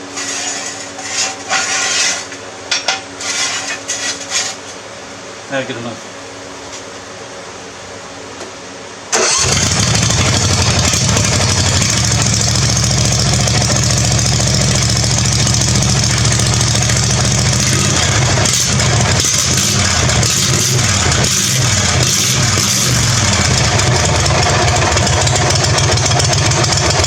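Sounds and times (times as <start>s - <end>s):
mower engine with open exhaust: 9.1s - 27.0s.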